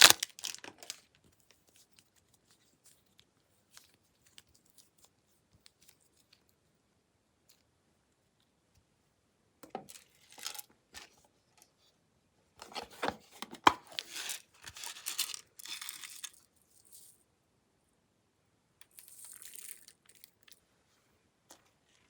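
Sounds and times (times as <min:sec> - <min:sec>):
slime crackling and popping: 0:00.0 - 0:01.0.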